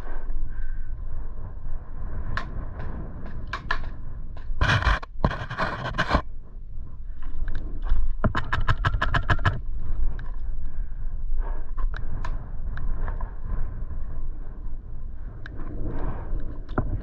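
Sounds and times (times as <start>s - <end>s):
gear scraping and rustling: 4.6s - 6.3s.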